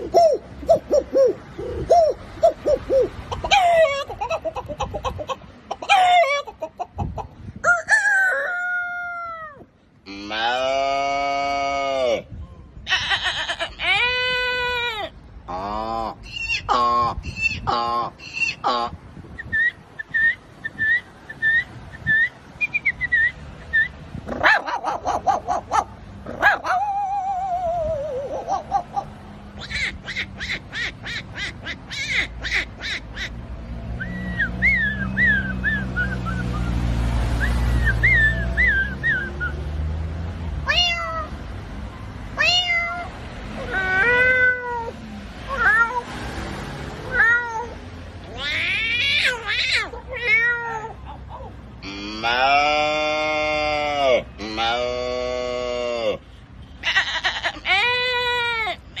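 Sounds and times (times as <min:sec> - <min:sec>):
man imitating animal calls: 0:00.0 - 0:07.8, 0:08.8 - 0:19.0, 0:23.8 - 0:33.4, 0:47.0 - 0:59.0
man imitating cat meows: 0:09.2 - 0:16.2, 0:42.4 - 0:44.9, 0:51.8 - 0:56.2
chirping whistles: 0:19.4 - 0:24.0, 0:34.0 - 0:36.8, 0:37.4 - 0:39.6.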